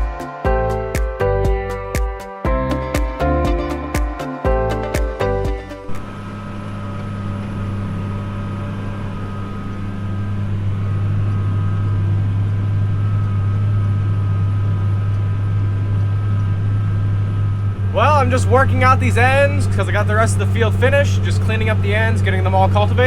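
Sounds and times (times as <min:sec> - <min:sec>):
music: 0:00.0 - 0:06.9
tractor engine droning under load: 0:05.7 - 0:23.0.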